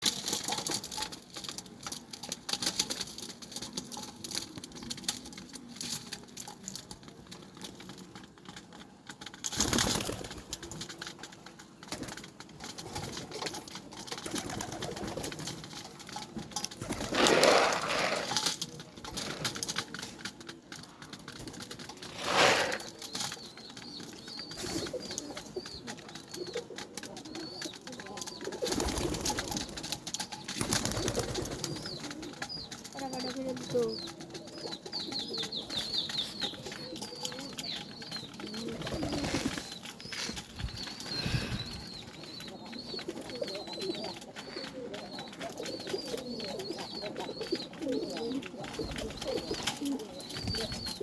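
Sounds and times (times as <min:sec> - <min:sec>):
small clicks and rustles: 0:00.0 - 0:51.0
pigeons cooing: 0:12.0 - 0:20.4, 0:21.0 - 0:51.0.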